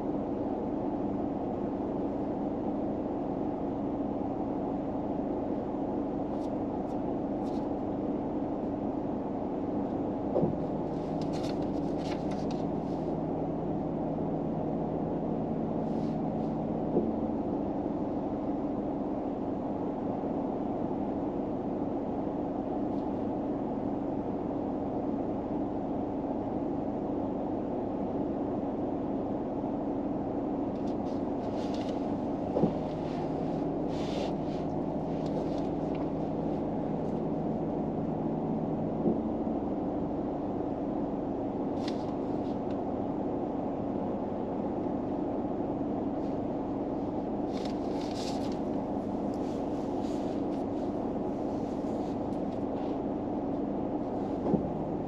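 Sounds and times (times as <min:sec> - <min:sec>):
car engine hum inside cabin: 0:00.0 - 0:55.0
faint rustles: 0:10.4 - 0:13.2, 0:30.8 - 0:37.4, 0:46.2 - 0:54.8
low tone: 0:31.3 - 0:41.6.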